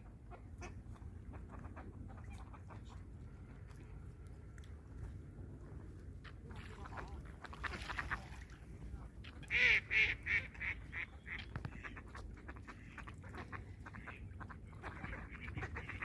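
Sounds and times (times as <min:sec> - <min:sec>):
waterfowl nasal calls: 0:09.3 - 0:16.0.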